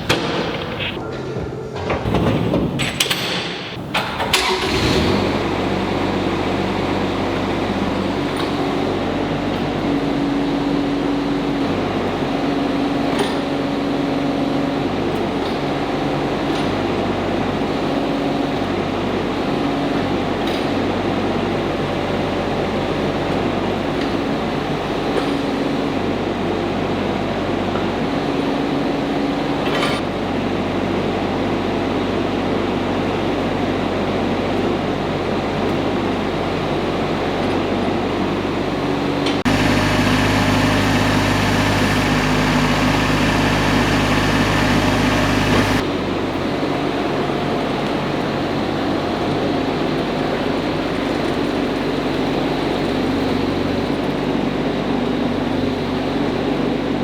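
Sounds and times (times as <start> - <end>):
excavator diesel engine running: 2.0 - 12.1, 38.7 - 45.9.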